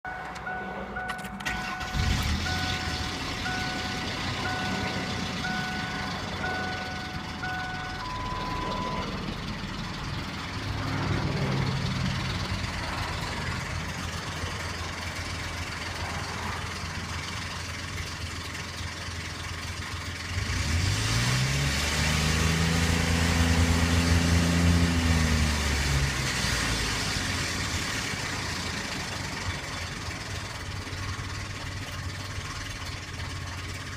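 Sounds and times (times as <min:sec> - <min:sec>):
vehicle chime beeping: 0:00.0 - 0:09.9
car engine idling and revving: 0:00.0 - 0:33.9.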